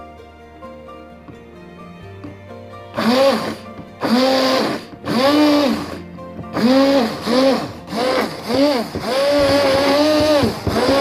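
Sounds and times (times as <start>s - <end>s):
blender motor whine: 3.0s - 11.0s.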